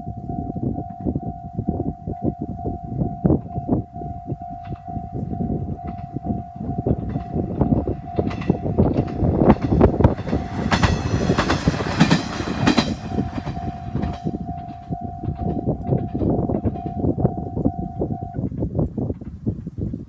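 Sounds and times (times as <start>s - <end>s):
level-crossing alarm tone: 0.0s - 18.4s
train running past: 0.3s - 18.3s
wheels clacking over rail joints: 4.4s - 17.7s.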